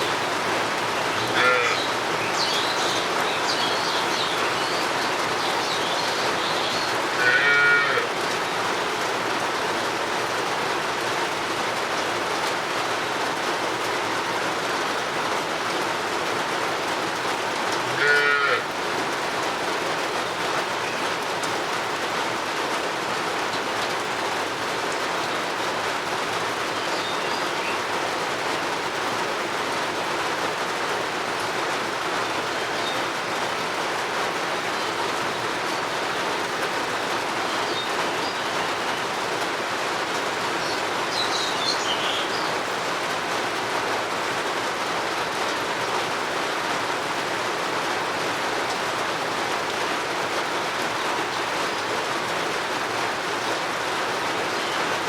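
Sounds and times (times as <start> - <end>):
steady rain hiss: 0.0 - 55.0
cow mooing: 1.3 - 1.8, 7.2 - 8.1, 17.8 - 18.6.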